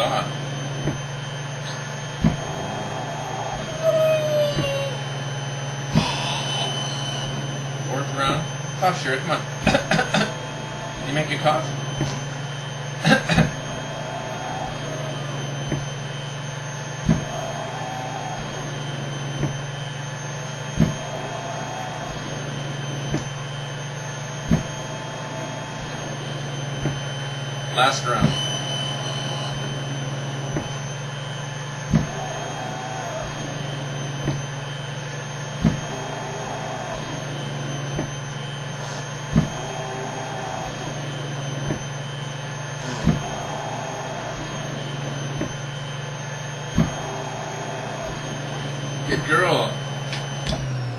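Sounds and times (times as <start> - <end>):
machine blower hum: 0.0 - 50.9
machine thumping: 2.1 - 2.6, 17.0 - 17.4, 20.7 - 21.4, 24.4 - 24.8, 31.9 - 32.6, 35.6 - 36.5, 39.2 - 39.8, 42.8 - 44.6, 46.6 - 48.2
machine thumps: 2.2 - 2.5, 20.8 - 21.0, 39.3 - 39.6.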